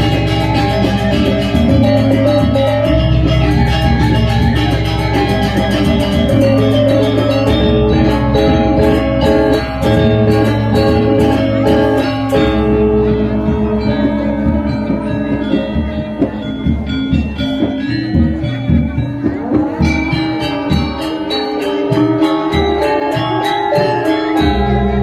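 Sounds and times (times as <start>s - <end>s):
deep low tone: 0.0s - 17.2s
metallophones ringing: 0.0s - 25.0s.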